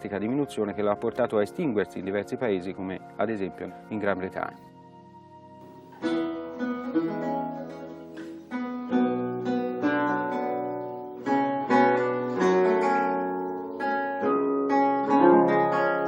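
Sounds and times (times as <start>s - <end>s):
acoustic guitar chords: 5.6s - 16.0s.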